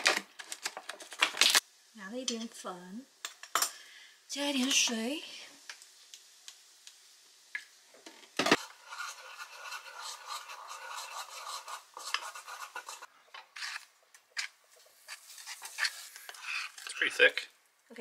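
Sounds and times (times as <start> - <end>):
utensil scraping and clinking bowl: 8.6 - 13.8.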